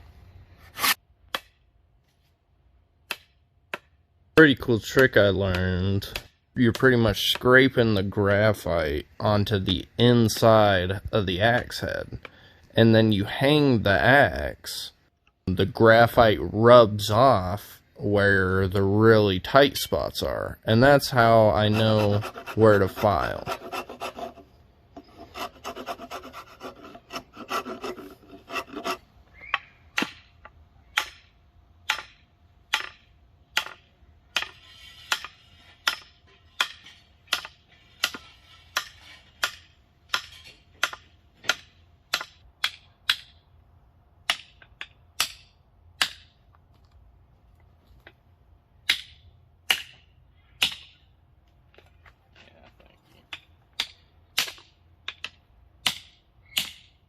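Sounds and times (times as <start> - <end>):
hand file scraping wood: 0.6 - 1.0, 21.0 - 29.1, 34.4 - 40.6.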